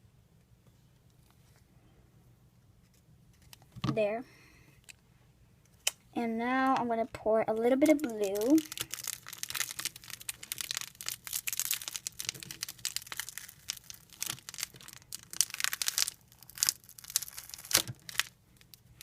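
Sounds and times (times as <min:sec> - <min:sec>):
glitter pouring: 0:08.3 - 0:18.3.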